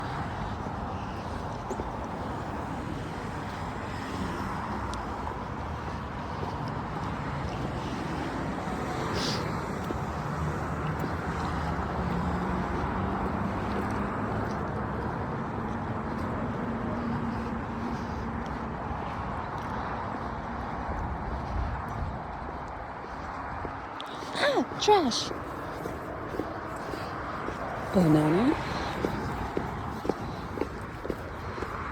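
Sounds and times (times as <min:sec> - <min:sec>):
street traffic: 0:00.0 - 0:31.9
vehicle engine hum: 0:00.0 - 0:31.9.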